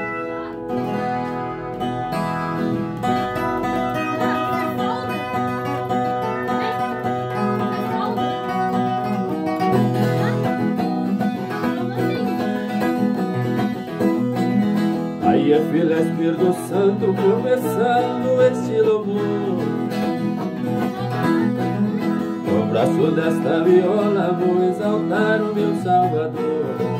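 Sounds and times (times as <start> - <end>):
folk guitar plucked notes: 0.0 - 26.9.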